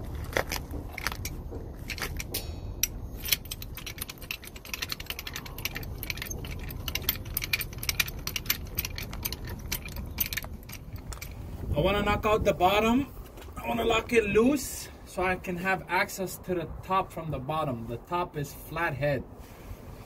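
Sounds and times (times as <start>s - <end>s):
steady low rumble: 0.0s - 20.0s
metallic clicking of hand tools: 1.0s - 11.4s.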